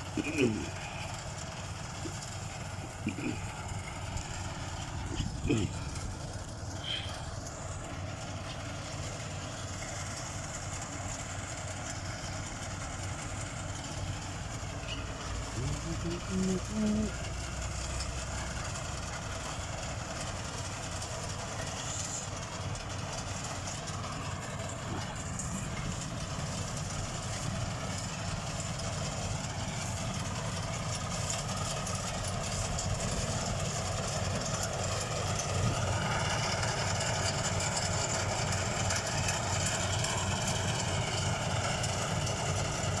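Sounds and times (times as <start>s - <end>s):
rice thresher engine rumbling: 0.0s - 43.0s.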